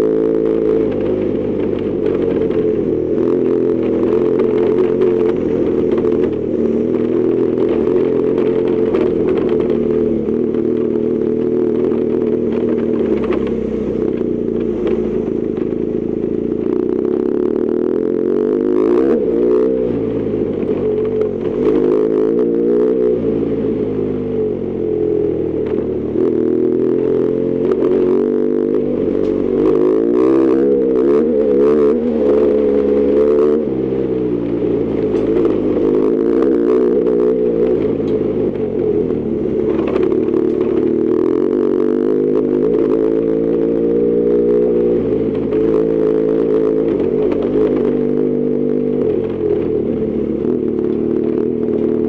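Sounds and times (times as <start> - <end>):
motorcycle engine revving: 0.0 - 52.0.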